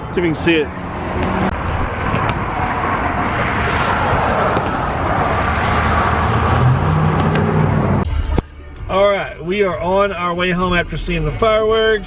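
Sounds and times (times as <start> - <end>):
road traffic: 0.0 - 11.4.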